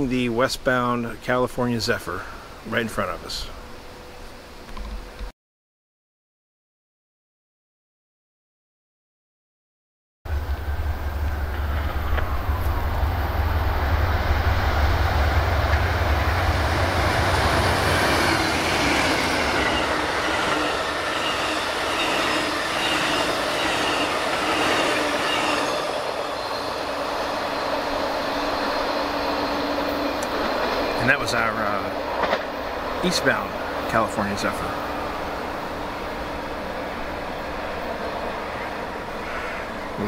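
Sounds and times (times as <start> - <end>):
diesel locomotive rumble: 10.3 - 40.0
train wheels clattering on rails: 11.2 - 27.3, 28.6 - 33.4.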